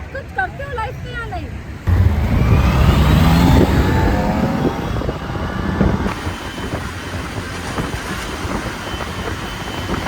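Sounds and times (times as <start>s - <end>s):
road vehicle rumble: 0.0s - 10.0s.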